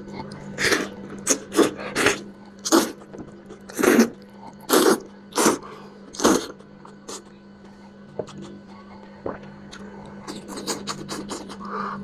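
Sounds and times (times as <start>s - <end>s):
faint hum: 0.0s - 12.0s
mouth and breath eating noises: 0.0s - 12.0s.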